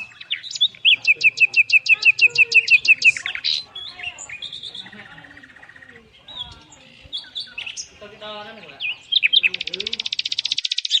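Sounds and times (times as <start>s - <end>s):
bird trill: 0.0s - 11.0s
songbirds chirping: 0.0s - 11.0s.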